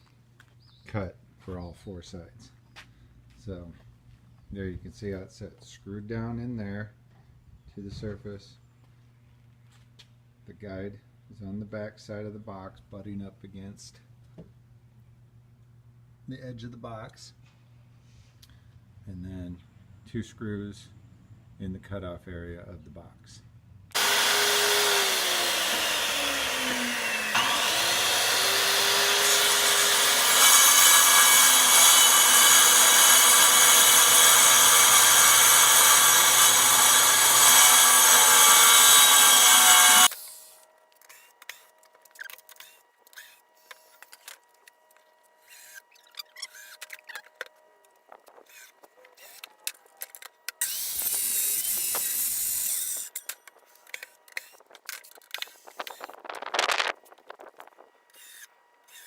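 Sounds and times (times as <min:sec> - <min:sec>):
circular saw cutting wood: 0:23.9 - 0:44.4, 0:45.4 - 0:47.5, 0:48.2 - 0:49.8, 0:50.6 - 0:56.3, 0:56.9 - 0:59.0.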